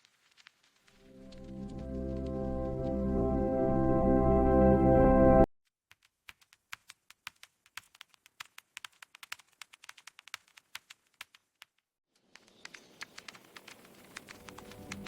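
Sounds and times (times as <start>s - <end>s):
soft music: 1.0s - 5.5s
mechanical keyboard keys clacking: 12.4s - 15.0s.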